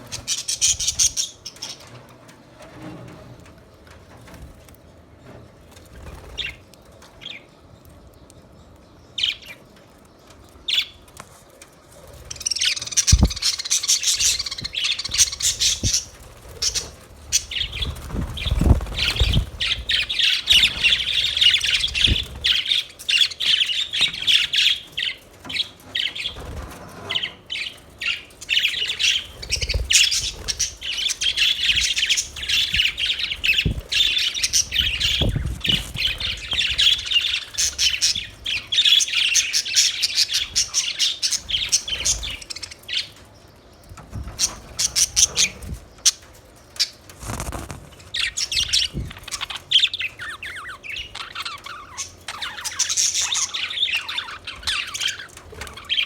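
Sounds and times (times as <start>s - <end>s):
budgerigars chirping and chattering: 0.0s - 2.0s, 6.0s - 6.6s, 12.0s - 43.3s, 43.9s - 56.0s
low thumps: 13.0s - 13.6s.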